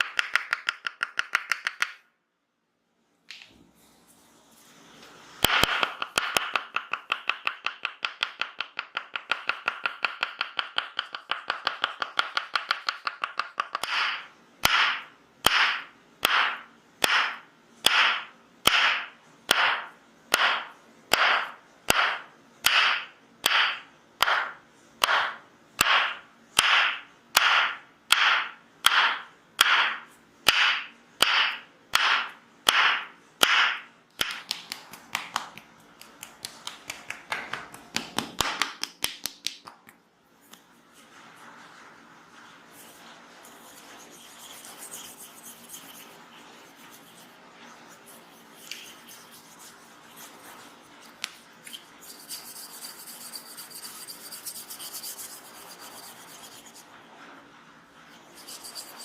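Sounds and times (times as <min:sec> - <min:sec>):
wooden mallet tapping wedge: 0:00.0 - 0:02.0, 0:05.5 - 0:34.6.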